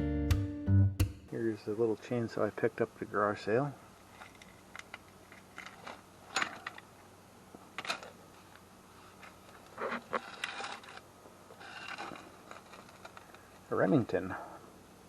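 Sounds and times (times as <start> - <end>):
rustling: 4.0 - 13.8.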